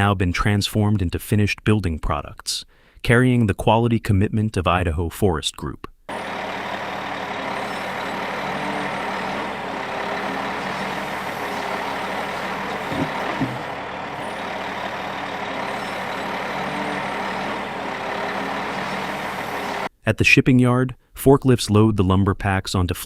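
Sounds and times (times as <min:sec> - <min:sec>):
heavy machinery running: 0:06.1 - 0:19.9.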